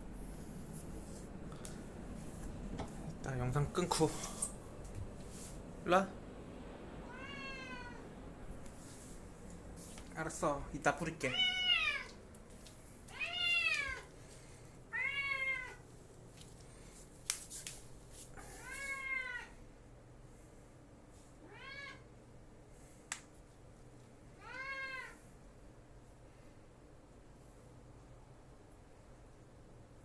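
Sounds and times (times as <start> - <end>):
cat meowing: 7.0 - 8.1, 11.3 - 12.2, 13.1 - 14.1, 14.9 - 15.8, 18.5 - 19.5, 21.4 - 22.0, 24.4 - 25.2.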